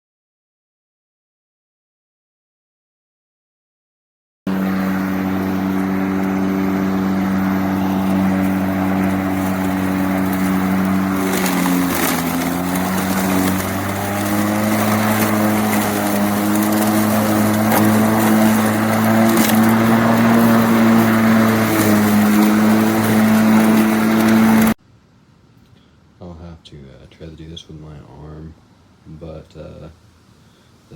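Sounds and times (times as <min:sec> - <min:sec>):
lawn mower engine running: 0:04.5 - 0:24.8.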